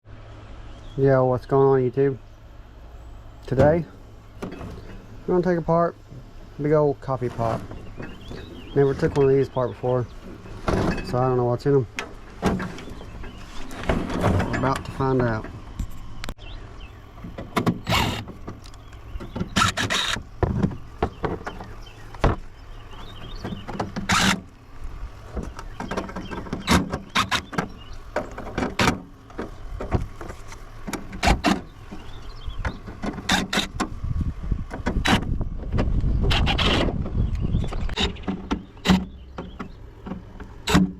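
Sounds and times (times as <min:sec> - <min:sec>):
short mechanical whirring: 0:17.6 - 0:18.4, 0:19.4 - 0:20.3, 0:36.2 - 0:38.3.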